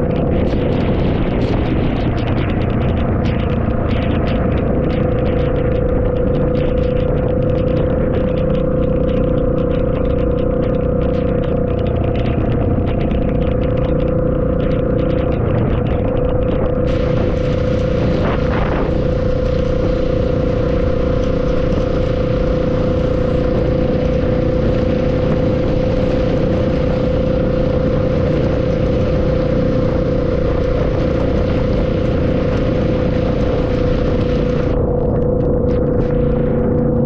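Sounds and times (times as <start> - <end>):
vehicle ride hum: 0.0 - 37.0
rain hiss on wet road: 16.8 - 34.8.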